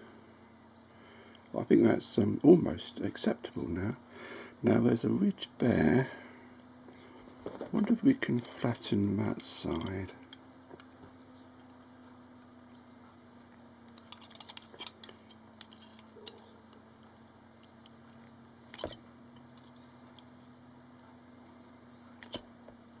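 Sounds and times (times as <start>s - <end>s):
pliers clicking on metal: 13.9s - 16.8s.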